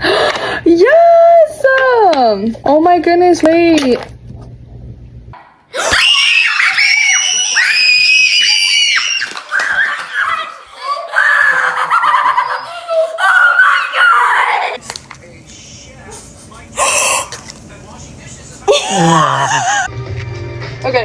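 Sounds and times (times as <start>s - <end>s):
high-pitched excited screaming: 5.8s - 14.8s
laughter: 11.4s - 13.2s.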